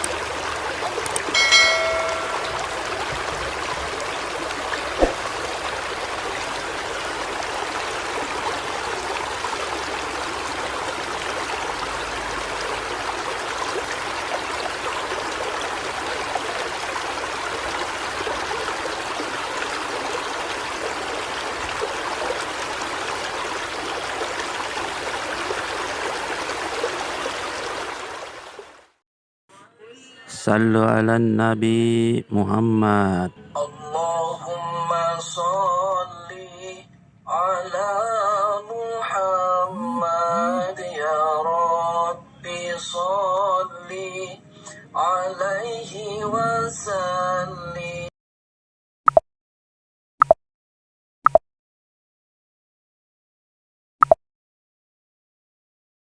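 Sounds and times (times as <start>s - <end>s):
floodwater rushing: 0.0s - 28.9s.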